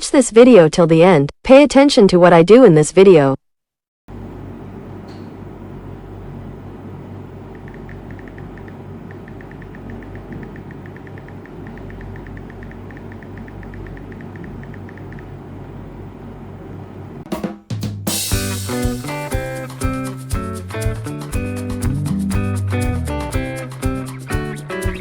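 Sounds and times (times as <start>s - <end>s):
phone keyboard clicks: 7.5s - 15.3s.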